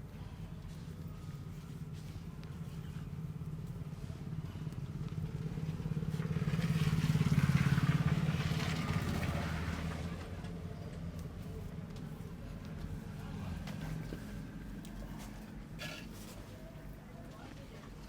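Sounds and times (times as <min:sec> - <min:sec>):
vehicle engine driving past: 0:02.7 - 0:14.6.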